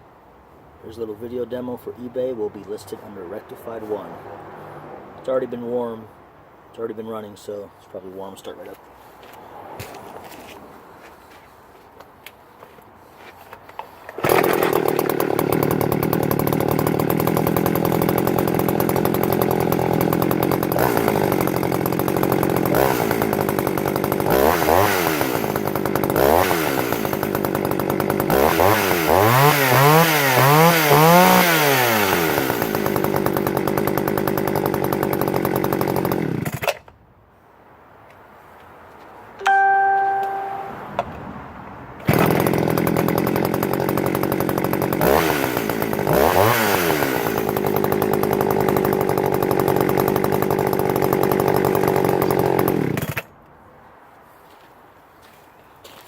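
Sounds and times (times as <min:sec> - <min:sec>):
chainsaw engine idling and revving: 0:14.1 - 0:36.8, 0:42.0 - 0:53.4.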